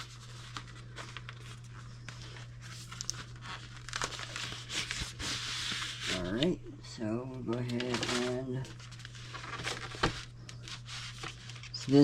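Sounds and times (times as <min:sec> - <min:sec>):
packaging crinkling and rustling: 0:00.0 - 0:06.5, 0:07.5 - 0:12.0
cardboard and paper tearing: 0:03.3 - 0:06.5.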